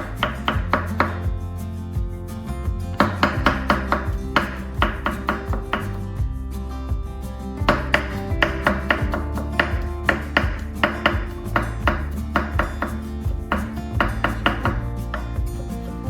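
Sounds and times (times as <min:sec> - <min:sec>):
background music: 0:00.0 - 0:16.0
knife chopping on cutting board: 0:03.0 - 0:06.0, 0:07.7 - 0:15.3.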